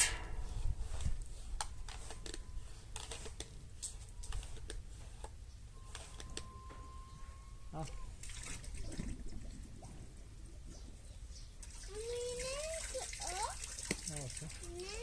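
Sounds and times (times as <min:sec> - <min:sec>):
faint steady high tone: 0:05.7 - 0:08.2.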